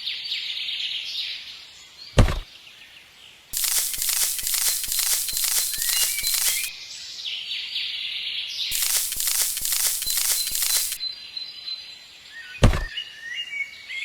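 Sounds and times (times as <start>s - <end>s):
sharp thump: 2.2s - 2.4s, 12.6s - 12.9s
high hiss: 3.6s - 6.7s, 8.7s - 11.0s.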